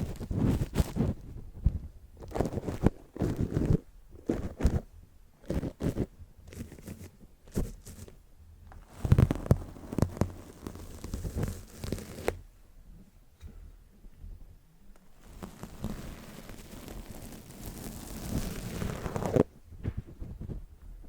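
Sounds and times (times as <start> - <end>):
paintbrush scratching on microphone: 2.3 - 8.2, 8.9 - 12.4, 15.2 - 19.5.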